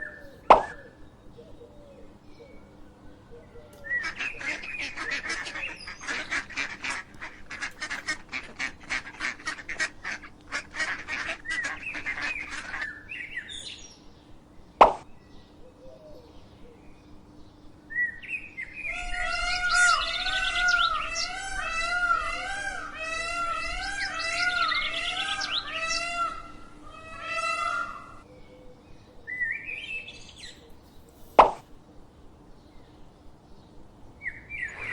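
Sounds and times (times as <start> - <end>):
fowl clattering calls: 0.0 - 1.0, 3.7 - 13.7, 14.8 - 15.0, 18.9 - 28.2
fowl honk-like calls: 2.6 - 13.7, 18.7 - 28.3, 34.6 - 34.9.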